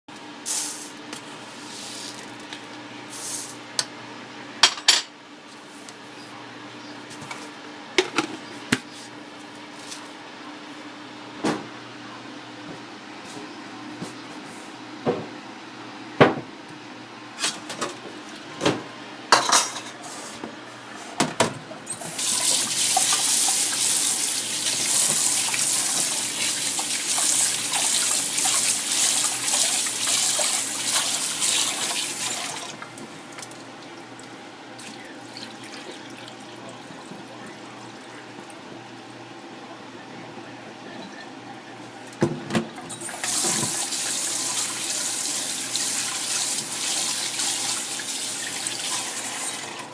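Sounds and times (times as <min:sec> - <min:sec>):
pots and utensils clattering: 0:19.4 - 0:20.0
kitchen tap running water: 0:22.0 - 0:36.9, 0:43.0 - 0:49.6.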